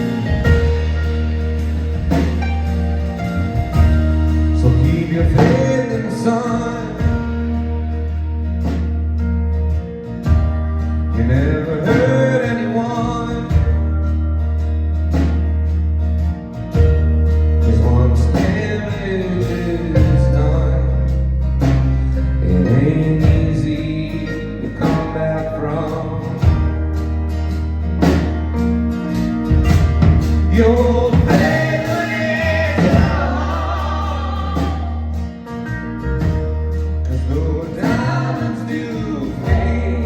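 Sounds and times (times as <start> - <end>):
live band music: 0.0 - 40.0
person singing: 30.5 - 35.3.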